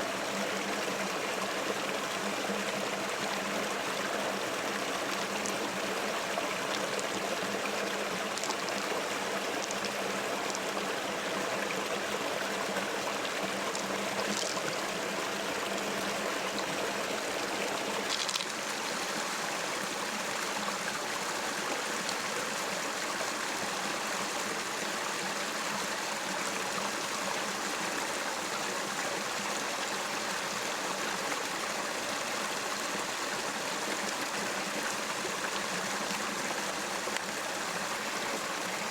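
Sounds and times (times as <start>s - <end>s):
river water rushing: 0.1s - 25.1s.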